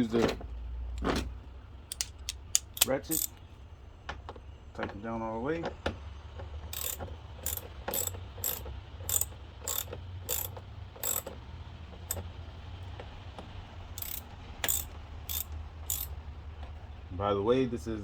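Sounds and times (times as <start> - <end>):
ratchet pawl clicks: 1.9 - 3.4, 6.7 - 11.4, 14.0 - 16.1.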